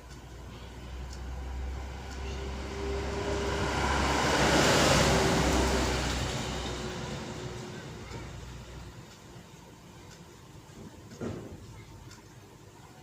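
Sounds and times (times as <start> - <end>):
vehicle passing by: 0.9 - 8.8.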